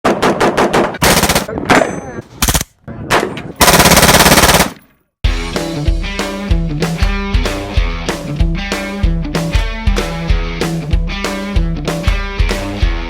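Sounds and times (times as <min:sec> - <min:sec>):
automatic gunfire bursts: 0:00.5 - 0:01.5, 0:02.4 - 0:02.6, 0:03.6 - 0:04.8
rock music with guitar: 0:05.3 - 0:13.0.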